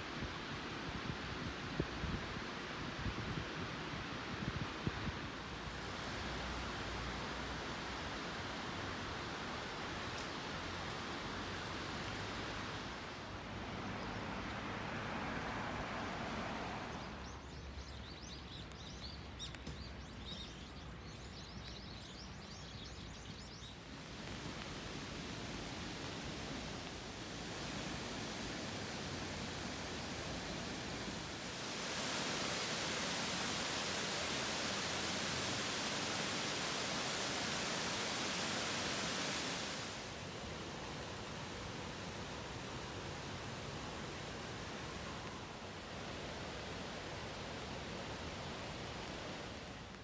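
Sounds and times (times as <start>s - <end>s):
rushing outdoor hiss: 0.0s - 50.0s
small birds chirping: 16.9s - 39.8s.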